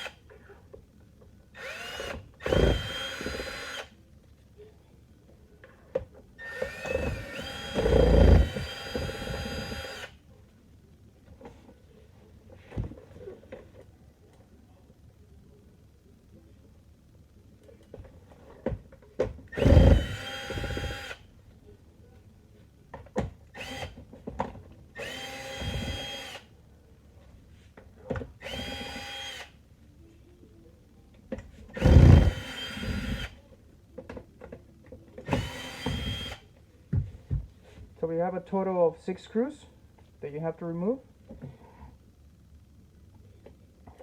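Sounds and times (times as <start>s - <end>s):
electric screwdriver whirring: 1.6s - 3.9s, 6.4s - 10.1s, 19.5s - 21.2s, 25.0s - 26.4s, 28.4s - 29.5s, 31.8s - 33.4s, 35.3s - 36.4s.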